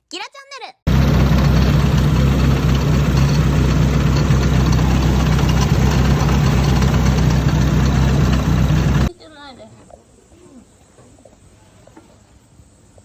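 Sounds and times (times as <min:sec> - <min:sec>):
car engine idling: 0:00.9 - 0:09.1.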